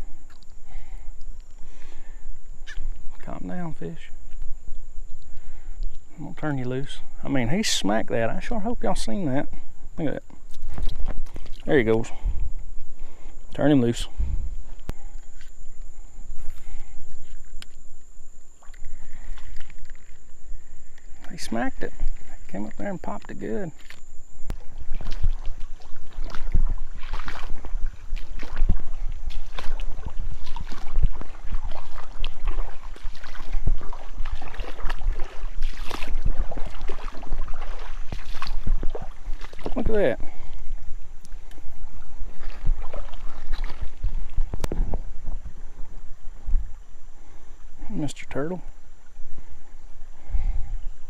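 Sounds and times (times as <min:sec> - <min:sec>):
wind rumble on microphone: 0:00.0 - 0:51.0
water sloshing and splashing: 0:10.4 - 0:11.7, 0:18.6 - 0:22.5, 0:23.8 - 0:46.8
dull low thumps: 0:23.8 - 0:35.4.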